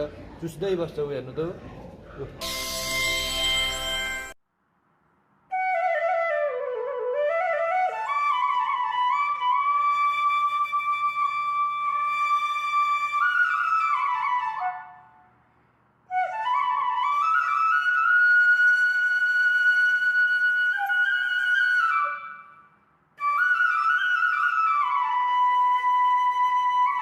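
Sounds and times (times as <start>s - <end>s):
slow solo flute-like melody: 5.5s - 15.2s, 16.1s - 27.0s.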